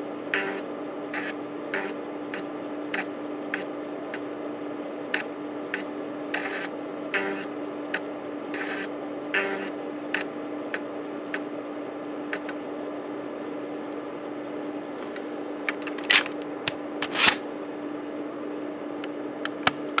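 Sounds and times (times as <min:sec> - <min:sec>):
floppy drive motor humming: 0:00.0 - 0:17.4
drive head clicking and buzzing: 0:12.3 - 0:12.6.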